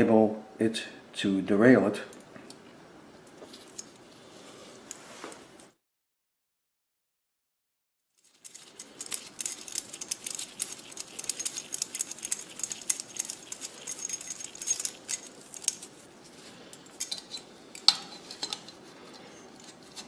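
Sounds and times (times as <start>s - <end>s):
small metal parts clicking: 8.2s - 15.9s, 16.7s - 18.6s.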